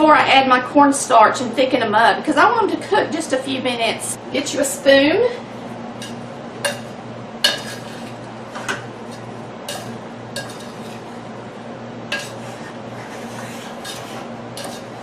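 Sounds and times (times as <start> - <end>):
spoon clinking against saucepan: 6.0 - 8.2, 9.1 - 11.0, 12.1 - 12.4.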